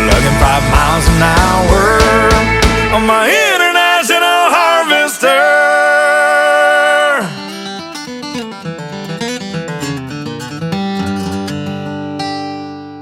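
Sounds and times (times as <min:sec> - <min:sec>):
guitar picking: 0:00.0 - 0:03.3, 0:07.3 - 0:13.0
country music: 0:00.0 - 0:13.0.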